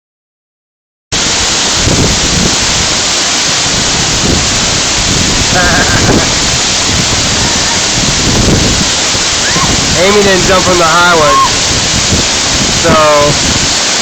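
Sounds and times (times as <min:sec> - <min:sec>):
waterfall roaring: 0:01.2 - 0:14.0.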